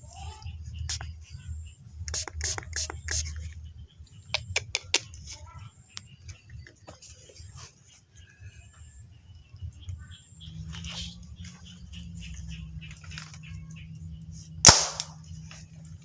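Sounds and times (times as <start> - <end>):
low steady rumble: 0.0 - 7.5, 8.5 - 16.0
sharp clicks and taps: 2.0 - 3.5, 4.3 - 5.2.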